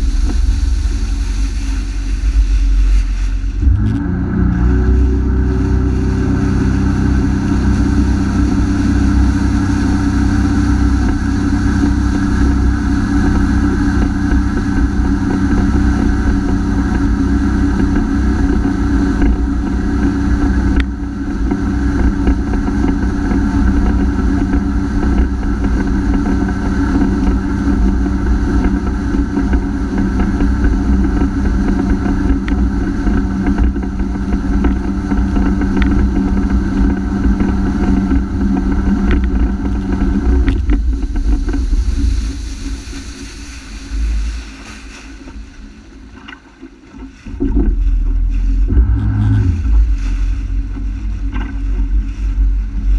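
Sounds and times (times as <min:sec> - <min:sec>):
jet ski engine running: 0:00.0 - 0:52.9.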